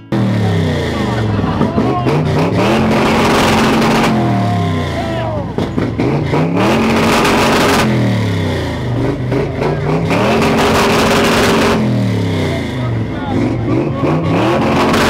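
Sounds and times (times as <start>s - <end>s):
engine revving: 0.0s - 15.0s.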